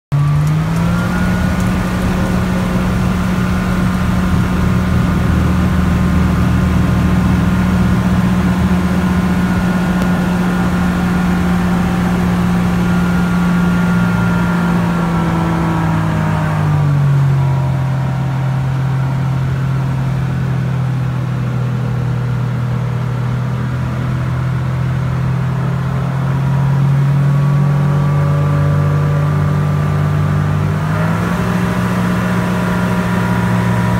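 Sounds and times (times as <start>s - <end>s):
propeller aircraft engine droning: 0.1s - 33.9s.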